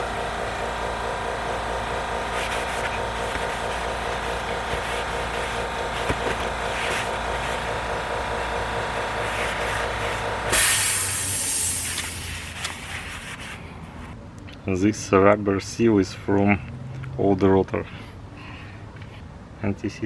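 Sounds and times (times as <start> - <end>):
mechanical hum: 0.0 - 17.0
loud hiss: 10.5 - 12.5.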